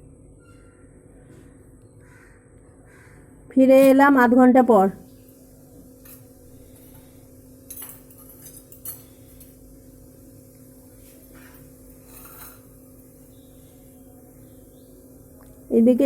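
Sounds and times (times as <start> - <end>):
dishes and utensils clinking: 6.0 - 9.6, 11.2 - 12.8.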